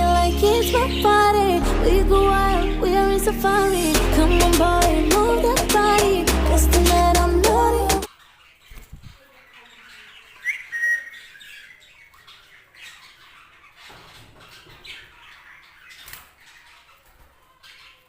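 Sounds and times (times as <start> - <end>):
budgies chirping: 0.0 - 1.6, 7.0 - 18.0
sharp bird call: 10.4 - 11.8.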